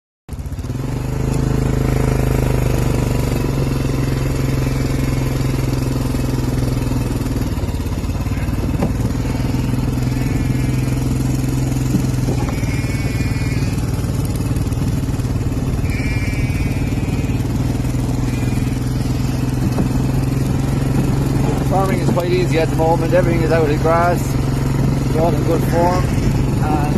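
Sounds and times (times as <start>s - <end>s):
quad bike engine running: 0.3s - 26.9s
wavering high calls: 3.4s - 7.4s, 8.0s - 24.3s.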